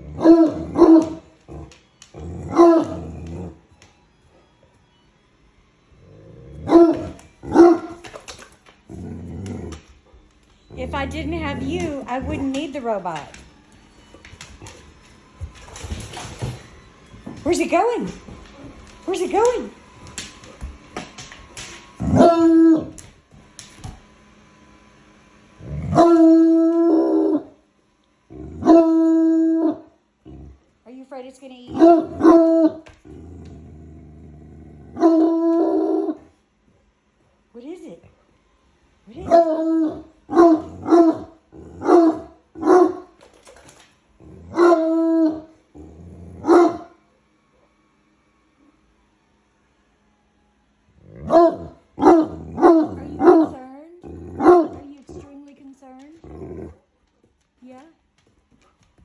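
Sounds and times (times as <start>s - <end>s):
dog howling: 22.0s - 23.0s, 25.8s - 27.6s, 28.4s - 29.9s, 34.9s - 36.3s, 44.4s - 46.9s
dog baying: 51.0s - 55.0s.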